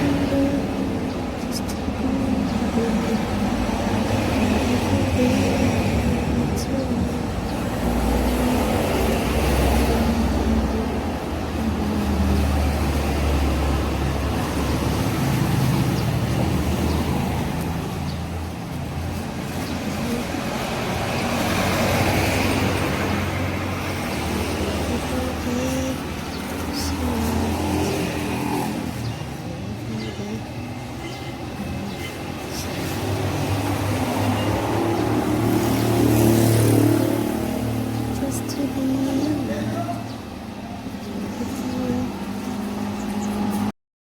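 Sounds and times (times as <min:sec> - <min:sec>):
road noise: 0:00.0 - 0:43.8
vehicle engine rumble: 0:00.0 - 0:43.8.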